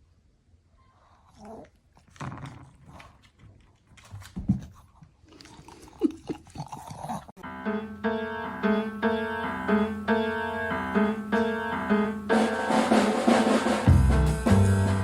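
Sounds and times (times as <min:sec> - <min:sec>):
dog moving and mouthing: 0:01.4 - 0:07.3.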